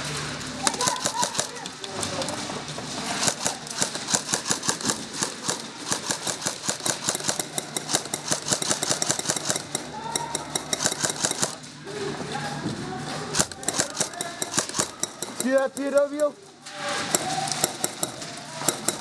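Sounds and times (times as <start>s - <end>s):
airsoft guns firing: 0.6s - 2.5s, 3.1s - 11.7s, 13.3s - 16.3s.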